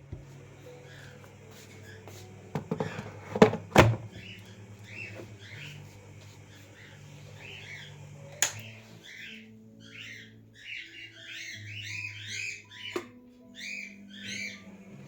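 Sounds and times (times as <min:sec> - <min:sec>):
music of held low notes: 0:00.0 - 0:15.0
bird chirps: 0:06.5 - 0:14.7.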